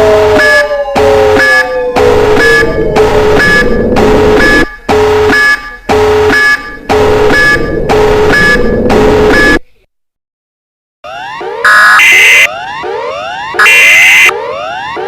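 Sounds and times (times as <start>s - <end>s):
distorted buzzing alarm tone: 0.0s - 9.6s, 11.6s - 12.5s, 13.6s - 14.8s.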